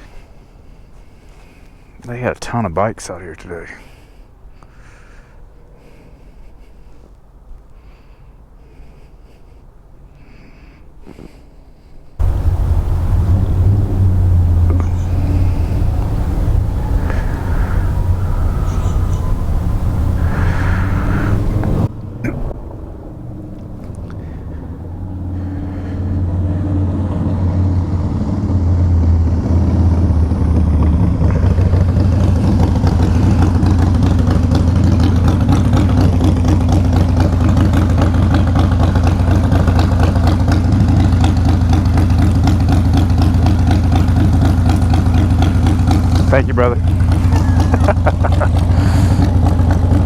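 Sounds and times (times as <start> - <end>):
motorcycle engine idling: 12.2 - 22.6, 31.5 - 50.0.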